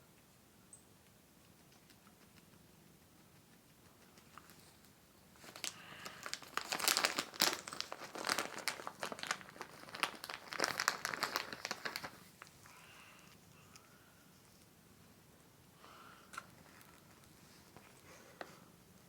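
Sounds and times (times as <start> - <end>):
plastic packet crinkling: 5.4 - 12.6, 16.3 - 18.0.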